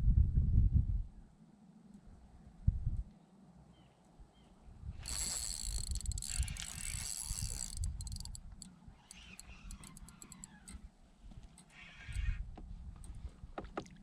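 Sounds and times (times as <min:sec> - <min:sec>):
fishing reel clicking: 0:05.0 - 0:12.3
fishing reel whirring: 0:05.0 - 0:12.4.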